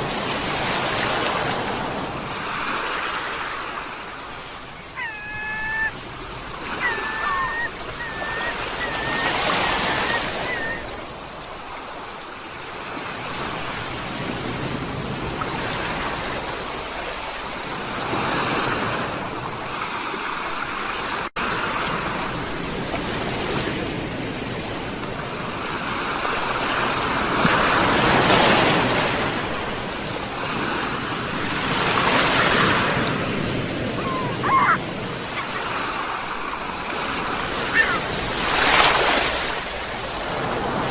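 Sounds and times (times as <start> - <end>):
sea waves washing ashore: 0.0 - 40.9
gulls calling: 4.0 - 12.0, 33.0 - 39.8.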